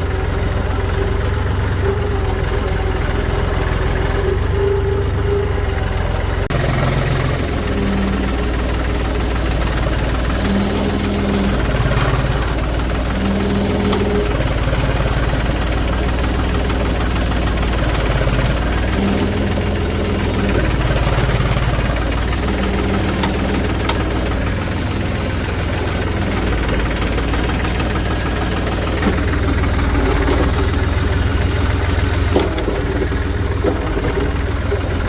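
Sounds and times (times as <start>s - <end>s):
heavy diesel engine running: 0.0s - 35.0s.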